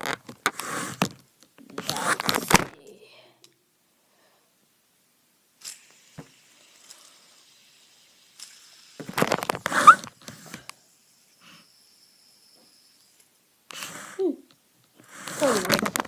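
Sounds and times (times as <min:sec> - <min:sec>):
fidget spinners clicking and clattering: 0:05.6 - 0:13.3, 0:15.1 - 0:16.0
faint high whir: 0:05.6 - 0:14.4
brief rising squeak: 0:09.8 - 0:10.0.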